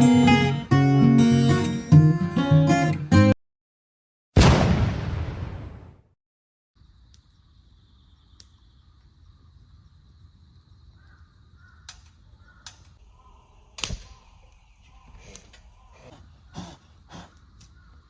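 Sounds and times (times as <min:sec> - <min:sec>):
low outdoor background noise: 0:06.8 - 0:18.0.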